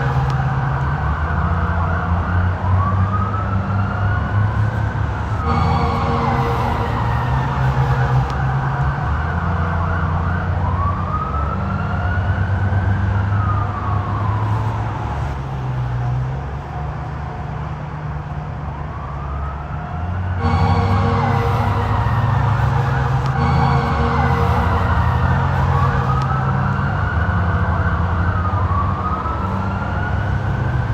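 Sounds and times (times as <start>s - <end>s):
police siren wailing: 0.0s - 15.4s, 18.6s - 30.9s
low rumble: 5.4s - 8.8s, 20.4s - 27.0s.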